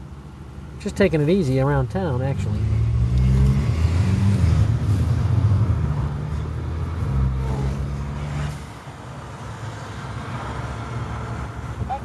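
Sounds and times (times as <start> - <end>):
car engine pulling under throttle: 0.0 - 12.0.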